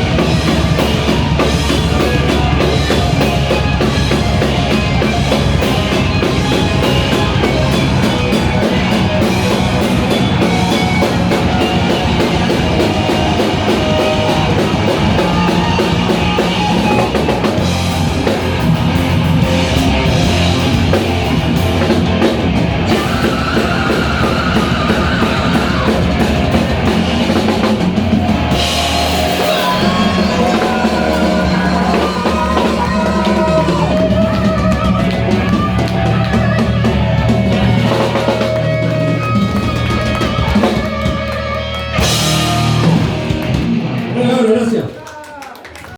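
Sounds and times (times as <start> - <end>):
guitars: 0.0 - 44.9
drum kit: 0.0 - 45.0
rock band playing live: 0.0 - 45.0.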